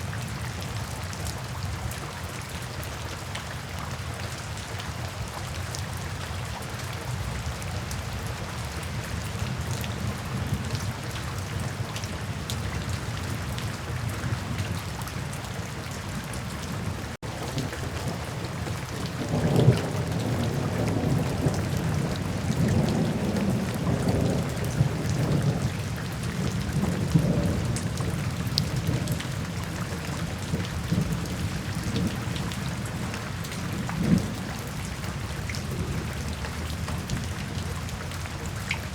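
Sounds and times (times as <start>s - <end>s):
steady rainfall: 0.0s - 38.9s
rolling thunder rumbles: 16.2s - 38.2s.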